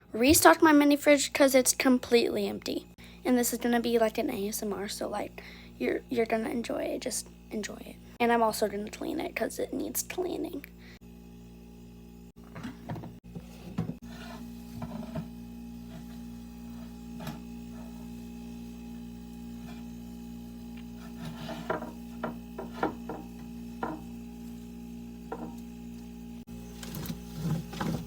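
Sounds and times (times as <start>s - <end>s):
steady low hum: 0.0s - 28.0s
rubbing and scraping: 13.2s - 18.2s, 20.9s - 23.2s, 26.7s - 28.0s.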